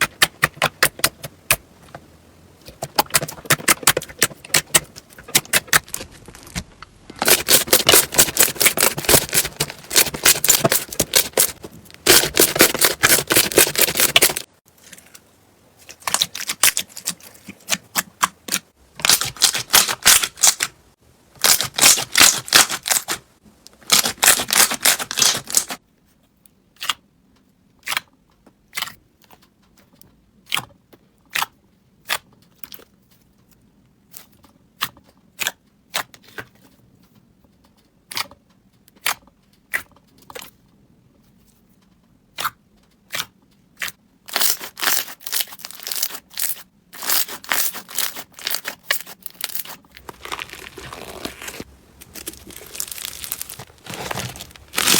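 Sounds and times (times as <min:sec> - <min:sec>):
slime squished crackling: 0:02.6 - 0:14.5, 0:15.8 - 0:20.8, 0:21.4 - 0:23.2, 0:23.8 - 0:25.8, 0:44.3 - 0:54.9.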